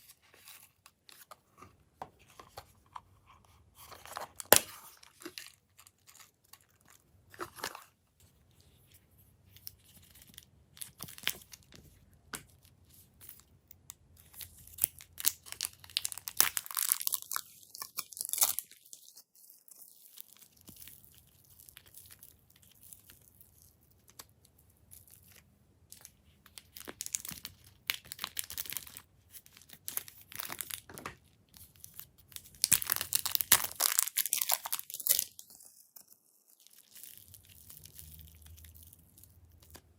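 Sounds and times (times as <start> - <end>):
slime crackling and popping: 32.5 - 35.6.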